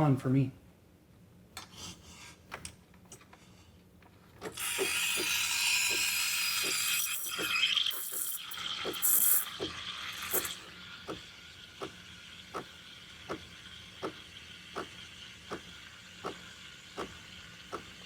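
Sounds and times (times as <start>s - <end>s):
pump pulsing: 4.4s - 18.0s
steam wand hissing: 4.6s - 12.7s.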